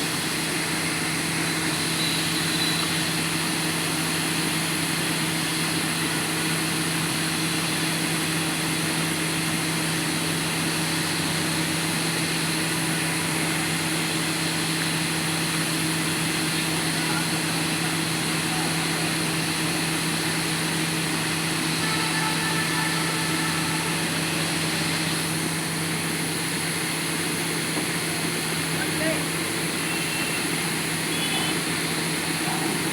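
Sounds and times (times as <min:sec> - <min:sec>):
diesel engine running steadily: 0:00.0 - 0:32.9.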